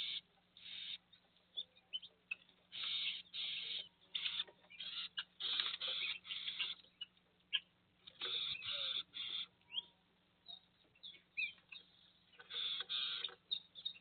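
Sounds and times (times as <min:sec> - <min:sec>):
bird scratchy calls: 0:00.0 - 0:01.1, 0:02.3 - 0:09.6, 0:11.4 - 0:14.0
bird chirps: 0:00.0 - 0:14.0.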